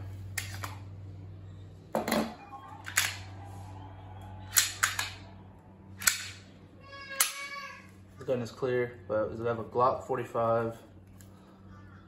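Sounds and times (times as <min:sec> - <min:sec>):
pistol slide metallic clicks: 0:04.5 - 0:05.2, 0:06.0 - 0:06.4.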